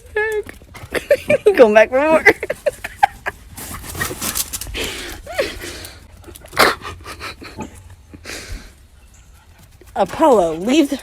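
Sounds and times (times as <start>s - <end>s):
dog panting: 3.6s - 11.0s.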